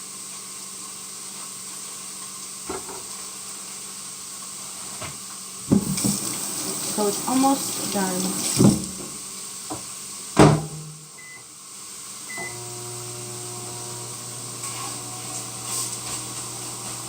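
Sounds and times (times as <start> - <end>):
microwave humming: 5.6 - 9.8, 10.4 - 17.0.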